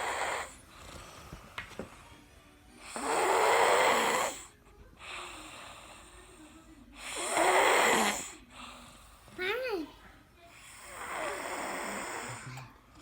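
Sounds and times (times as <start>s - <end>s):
child snoring loudly: 0.0s - 0.8s, 2.8s - 6.1s, 7.0s - 9.9s, 10.6s - 12.7s
quiet breath out: 0.0s - 9.4s.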